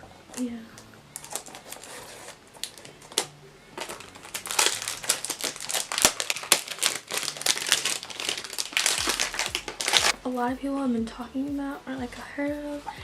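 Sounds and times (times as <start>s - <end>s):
crinkly packaging rustling: 0.3s - 10.2s.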